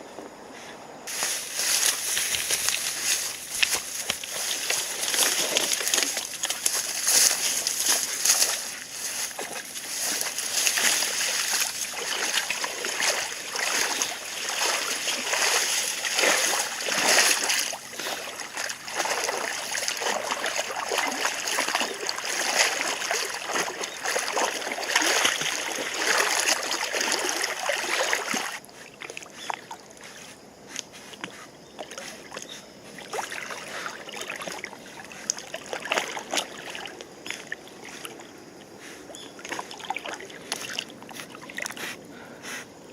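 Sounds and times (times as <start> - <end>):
river water rushing and splashing: 1.1 - 28.6.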